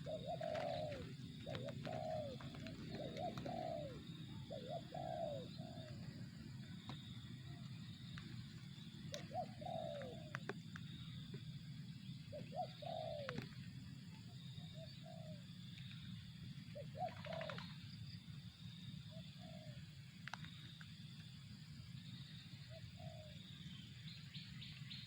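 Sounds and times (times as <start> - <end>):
dove cooing: 0.0 - 15.6, 16.7 - 18.0, 19.1 - 20.4, 22.6 - 23.9.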